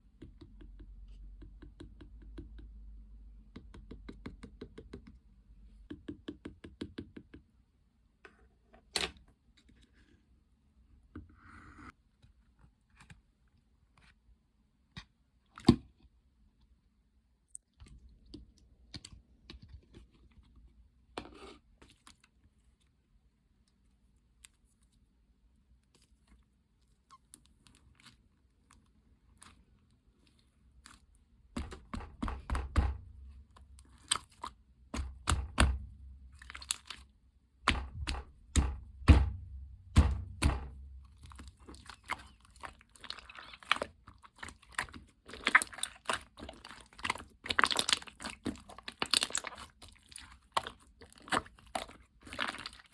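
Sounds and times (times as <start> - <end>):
slime crackling and crunching: 31.6 - 52.9.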